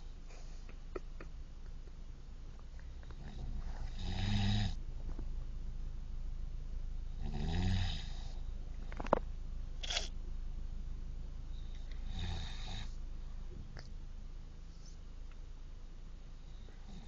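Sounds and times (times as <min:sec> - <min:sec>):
man snoring: 0:03.2 - 0:04.8, 0:07.2 - 0:08.4, 0:12.1 - 0:12.9, 0:16.8 - 0:17.0.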